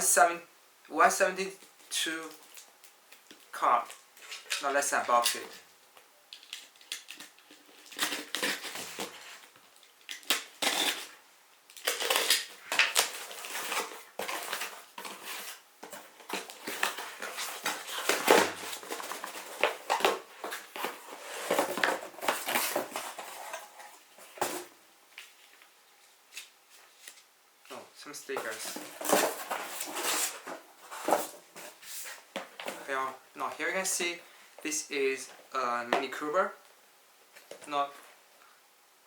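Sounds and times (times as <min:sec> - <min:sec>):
packaging rustling and crinkling: 0:06.3 - 0:27.3, 0:28.3 - 0:33.0.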